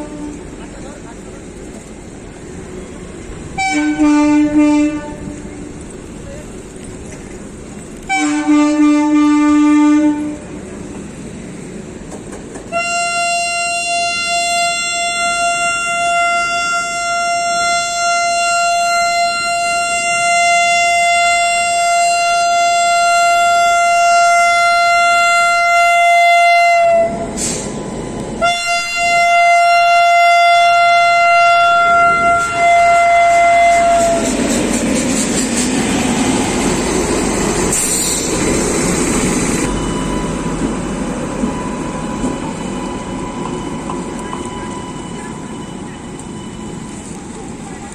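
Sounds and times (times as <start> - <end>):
locomotive horn blasts: 0.0 - 0.5, 3.6 - 5.5, 8.1 - 10.5, 12.7 - 27.5, 28.4 - 34.4.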